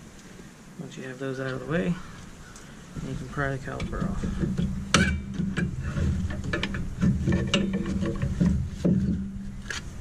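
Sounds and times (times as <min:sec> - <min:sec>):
metallic clicks and scrapes: 0:03.7 - 0:10.0.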